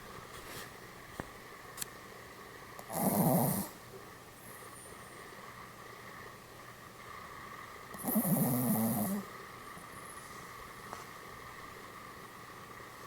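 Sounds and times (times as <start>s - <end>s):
dog snoring: 2.8s - 3.8s, 7.9s - 9.3s.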